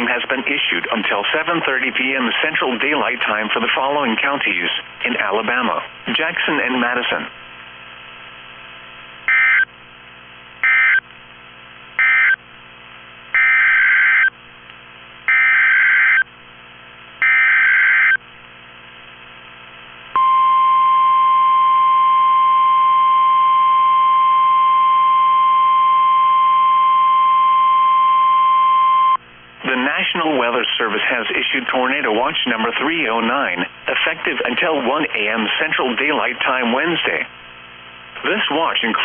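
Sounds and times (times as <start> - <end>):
faint hum: 0.0 - 39.0.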